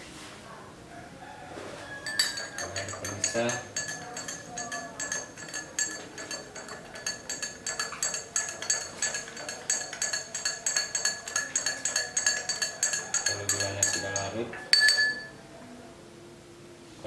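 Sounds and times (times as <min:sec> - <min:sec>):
teaspoon clinking in a glass: 0:02.0 - 0:15.4.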